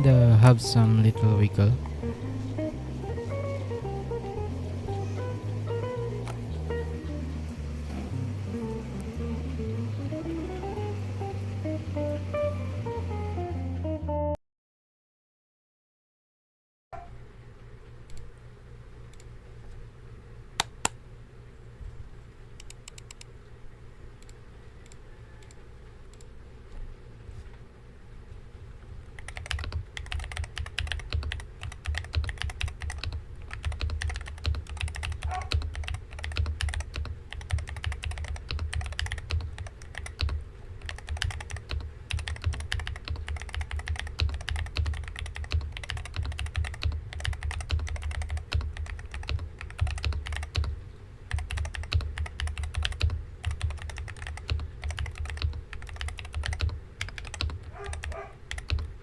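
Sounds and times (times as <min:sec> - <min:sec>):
fast keyboard typing: 0:29.2 - 0:59.0.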